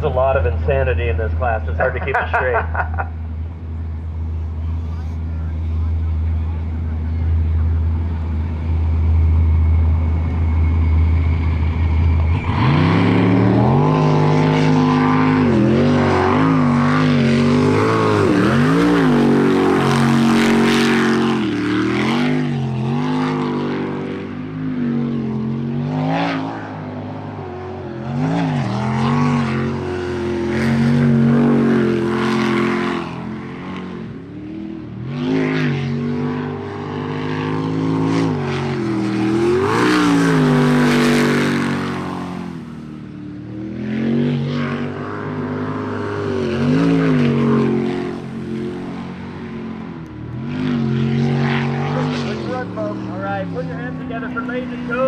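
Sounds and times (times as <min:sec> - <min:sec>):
low steady rumble: 0:00.0 - 0:15.8
boat engine at full throttle: 0:00.0 - 0:55.0.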